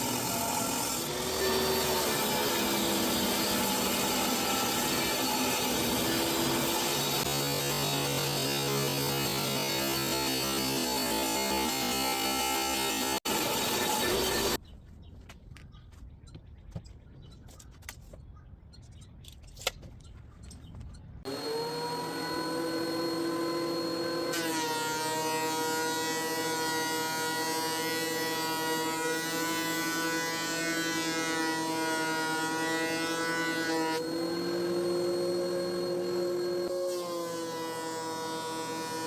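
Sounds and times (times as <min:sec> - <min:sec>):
woodworking machine motor humming: 0:21.3 - 0:28.1, 0:31.6 - 0:39.0.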